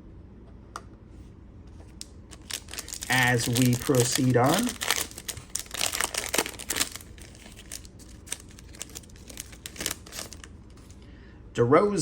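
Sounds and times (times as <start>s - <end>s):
wrapper crinkling: 1.9s - 11.0s.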